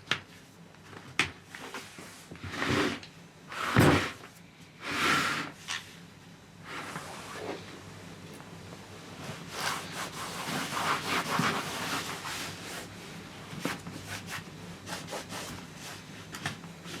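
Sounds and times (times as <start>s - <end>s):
faint steady hum: 0.0s - 17.0s
rubbing and scraping strokes: 9.5s - 12.9s.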